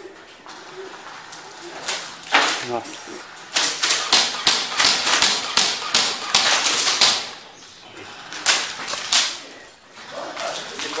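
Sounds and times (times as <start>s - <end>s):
airsoft gun shots: 3.6s - 7.4s.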